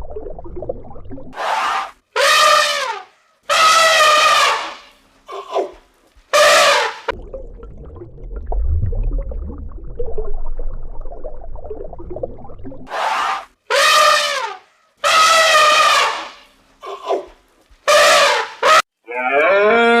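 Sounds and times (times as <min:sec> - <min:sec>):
low rumbling noise: 0:07.2 - 0:12.8.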